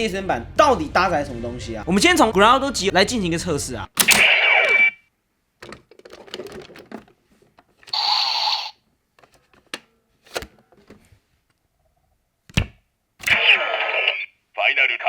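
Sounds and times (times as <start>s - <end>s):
toy belt clicking and clacking: 7.9s - 8.8s.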